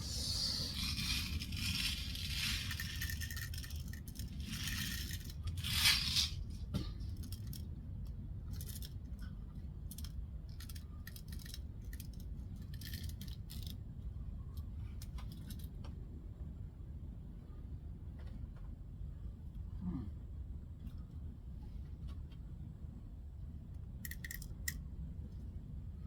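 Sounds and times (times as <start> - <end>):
small metallic clicks: 7.1 - 9.3, 9.9 - 13.8, 23.8 - 24.8.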